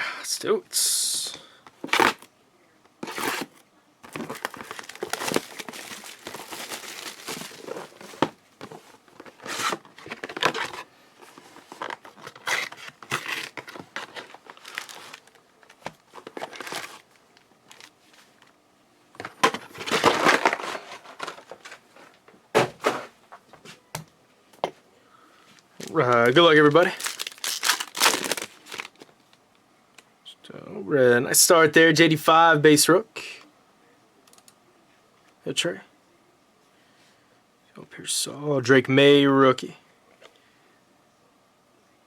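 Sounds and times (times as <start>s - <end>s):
plastic wrapping tearing and crinkling: 4.1s - 8.3s, 11.8s - 17.9s, 25.8s - 29.1s.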